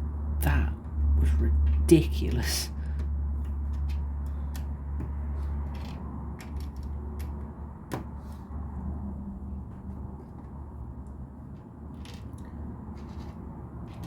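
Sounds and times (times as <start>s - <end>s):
plastic pieces clicking: 2.9s - 8.1s, 12.0s - 14.0s.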